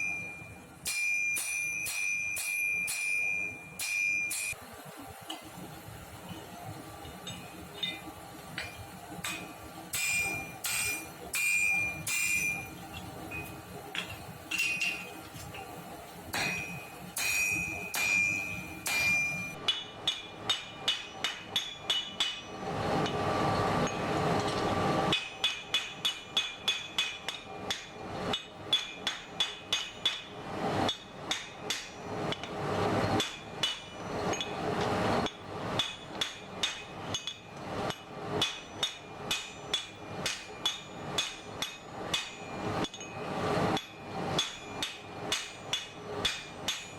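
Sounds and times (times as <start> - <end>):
hammer striking steel on anvil: 0.0 - 4.6, 7.2 - 15.6, 16.3 - 46.9.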